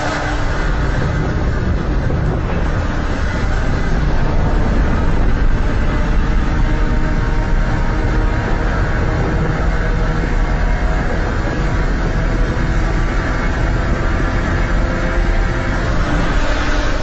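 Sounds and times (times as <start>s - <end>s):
deep mechanical rumble: 0.0s - 17.0s.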